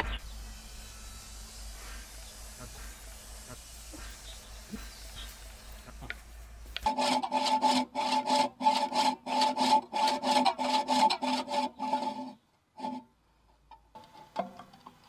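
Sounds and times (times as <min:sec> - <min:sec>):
hand tool rasping on wood: 0:01.7 - 0:13.0.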